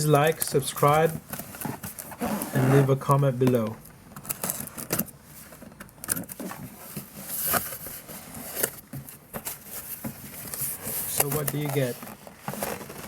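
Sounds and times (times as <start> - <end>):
sliding rustle: 0.8 - 3.2, 4.4 - 13.0
cardboard box being opened: 6.2 - 13.0.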